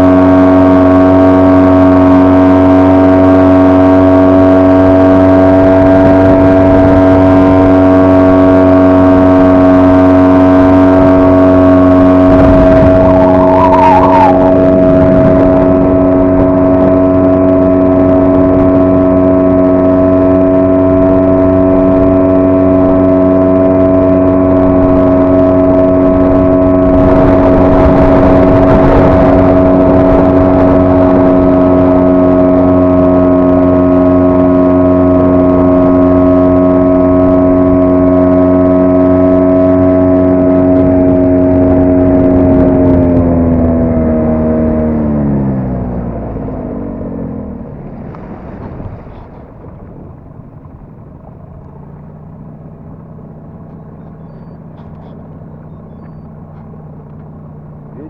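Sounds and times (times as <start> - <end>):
outboard motor running: 0.0 - 58.0
rush of noise: 4.6 - 19.2.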